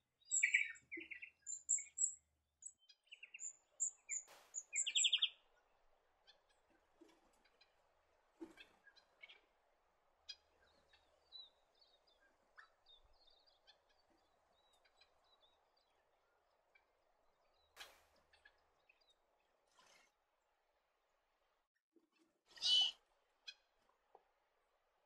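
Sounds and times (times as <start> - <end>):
finches chirping: 0.3 - 5.4.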